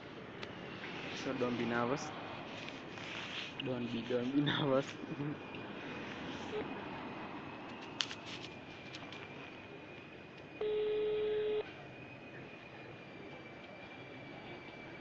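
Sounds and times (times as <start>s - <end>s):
phone ringback tone: 10.6s - 11.6s.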